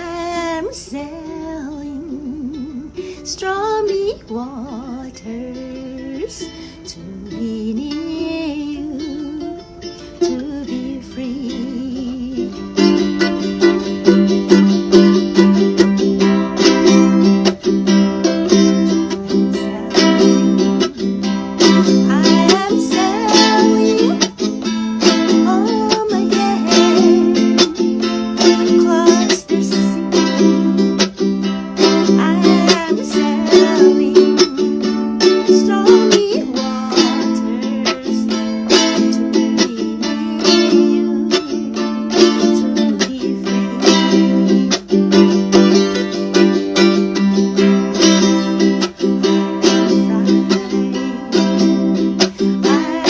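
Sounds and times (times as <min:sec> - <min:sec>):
ukulele strummed: 0:00.0 - 0:53.0.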